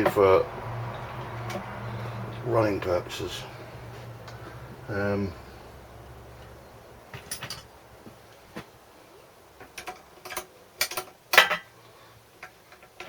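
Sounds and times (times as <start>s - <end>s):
metal tools and parts clinking: 6.4s - 7.7s, 9.6s - 11.7s.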